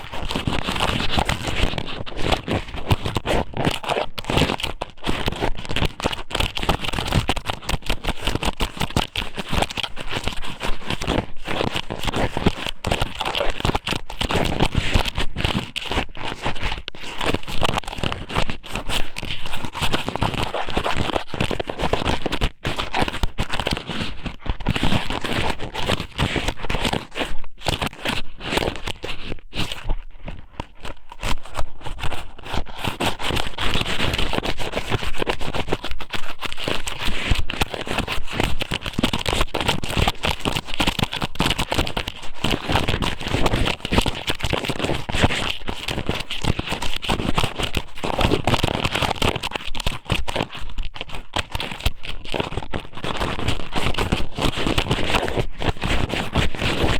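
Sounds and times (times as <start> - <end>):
close crackling and rustling: 0.0 - 56.9.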